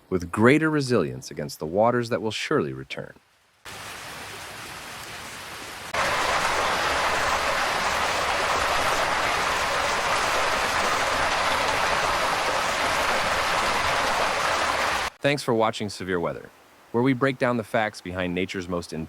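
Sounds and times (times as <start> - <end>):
heavy rain hissing: 3.7 - 15.2.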